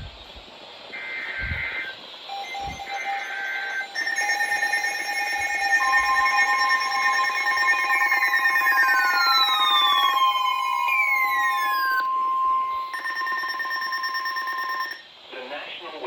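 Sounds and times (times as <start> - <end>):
buzzing digital header bursts: 1.0 - 15.0
steady alarm tones: 1.0 - 15.0
falling siren-like sweep: 2.3 - 15.0.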